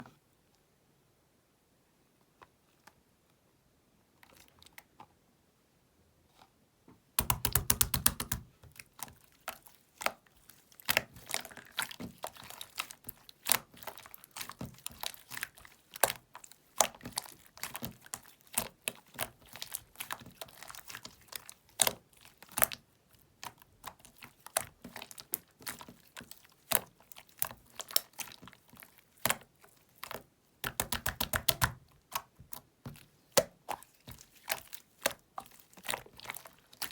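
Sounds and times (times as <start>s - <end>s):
slime popping and clicking: 7.2s - 8.5s.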